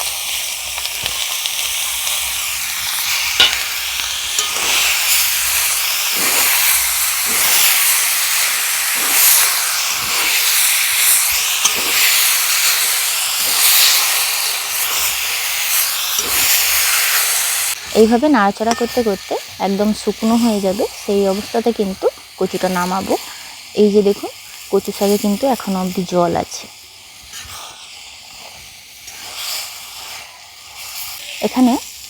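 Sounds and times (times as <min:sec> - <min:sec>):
leaves sizzling in hot oil: 0:00.0 - 0:32.0
spatula stirring and scraping: 0:00.9 - 0:21.5, 0:27.2 - 0:31.4.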